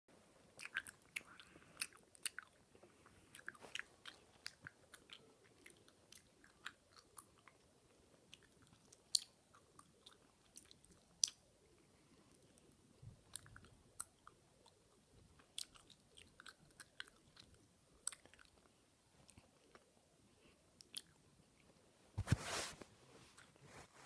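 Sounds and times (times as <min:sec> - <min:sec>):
gum chewing wet smacks: 0:00.6 - 0:07.7, 0:08.3 - 0:11.4, 0:13.2 - 0:19.9.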